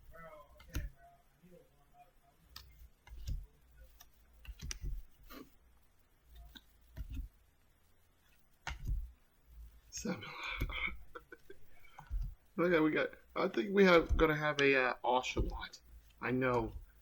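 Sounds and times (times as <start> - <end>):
trading cards clicking and rustling: 2.5 - 5.4
low thumps: 13.8 - 14.6, 15.3 - 15.8.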